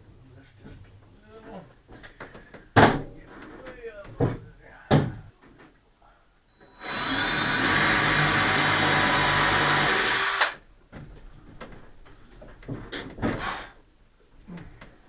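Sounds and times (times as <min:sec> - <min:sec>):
soft knocks and handling: 0:00.6 - 0:05.8, 0:10.9 - 0:13.4
power tool motor whining: 0:06.7 - 0:10.6.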